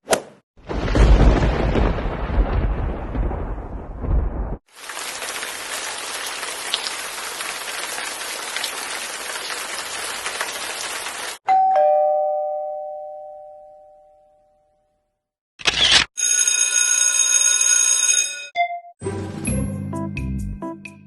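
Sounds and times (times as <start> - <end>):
steady hiss like rain: 4.7 - 11.4
two-note doorbell chime: 11.5 - 14.9.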